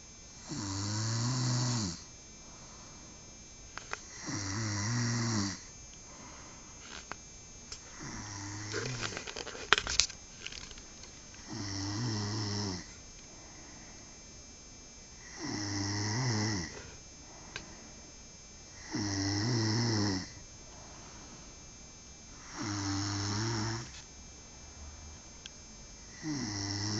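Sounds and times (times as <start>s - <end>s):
man snoring: 0.4s - 2.8s, 4.0s - 6.9s, 7.8s - 9.3s, 11.4s - 13.0s, 15.2s - 17.9s, 18.7s - 20.4s, 22.3s - 24.0s, 26.0s - 26.9s.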